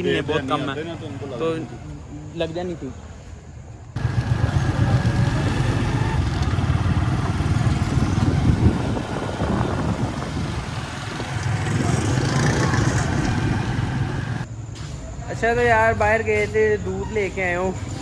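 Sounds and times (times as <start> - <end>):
road noise: 0.0 - 18.0
motorcycle engine rumble: 4.0 - 14.5.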